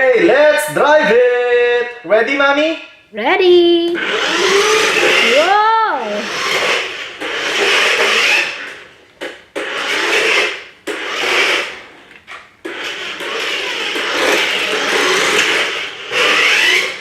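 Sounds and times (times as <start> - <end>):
toy car motor whirring: 4.0 - 8.9, 9.5 - 12.0, 12.6 - 17.0.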